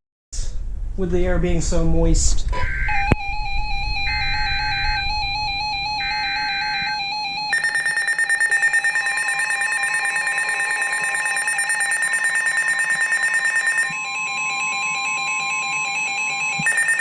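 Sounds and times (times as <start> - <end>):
pulsing warbling electronic alert: 2.6 - 14.4, 16.6 - 17.0
steady warning alarm tone: 2.6 - 17.0.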